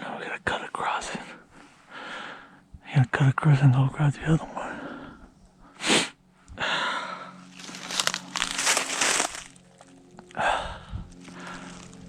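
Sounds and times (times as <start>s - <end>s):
footsteps crunching dry leaves: 7.4s - 12.0s.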